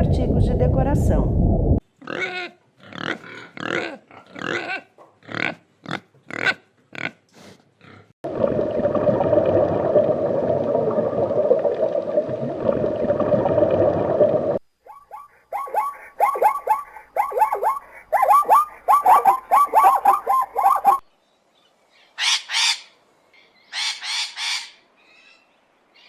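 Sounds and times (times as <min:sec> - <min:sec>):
farm animals calling: 0:14.9 - 0:21.0.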